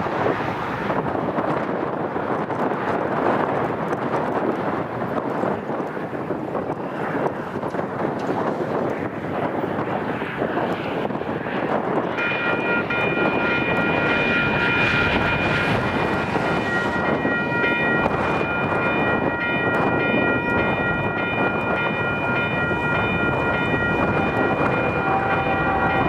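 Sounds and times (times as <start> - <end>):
train wheels on rail: 0.0 - 26.0
high-pitched whine: 9.9 - 26.0.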